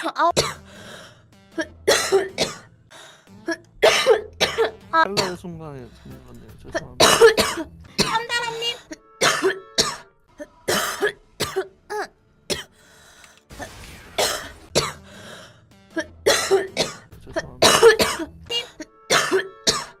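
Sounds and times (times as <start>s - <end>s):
woman coughing: 0.0s - 0.6s, 1.6s - 2.6s, 3.5s - 5.4s, 6.8s - 10.1s, 10.7s - 12.7s, 14.2s - 15.0s, 16.0s - 20.0s
breathing: 0.6s - 1.3s, 2.9s - 3.3s, 5.9s - 6.3s, 12.7s - 13.5s, 15.0s - 15.7s.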